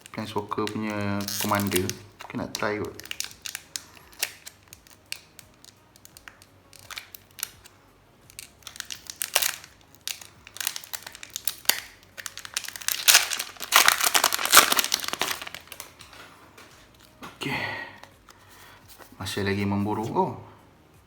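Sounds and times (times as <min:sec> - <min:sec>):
foil wrapper crinkling: 0:00.0 - 0:07.7, 0:08.3 - 0:17.2.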